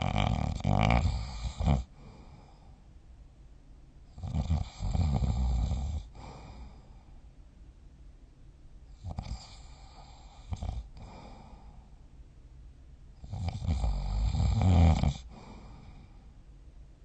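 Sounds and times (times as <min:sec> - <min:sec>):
person snoring: 0:00.0 - 0:02.6, 0:04.2 - 0:06.9, 0:09.0 - 0:11.8, 0:13.2 - 0:16.2.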